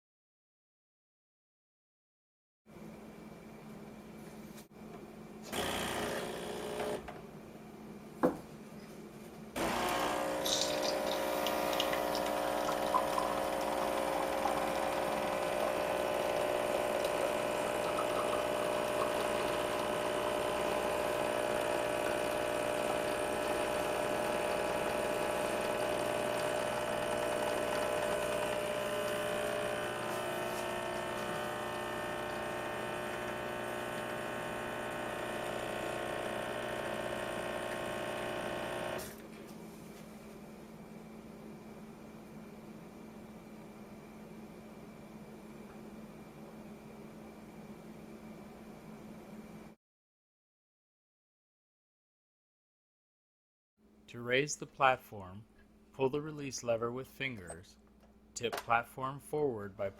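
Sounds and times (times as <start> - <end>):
espresso machine pump humming: 5.5 - 7.2, 9.6 - 39.3.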